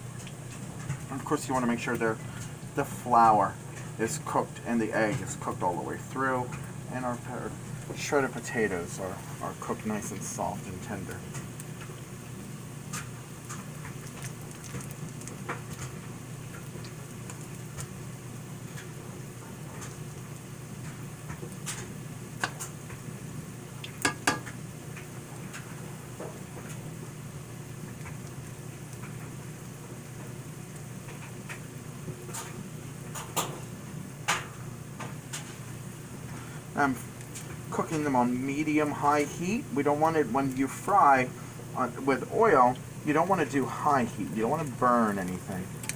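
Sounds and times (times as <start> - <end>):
food sizzling in hot oil: 11.2 - 37.7
utensil tapping pan: 24.0 - 24.5.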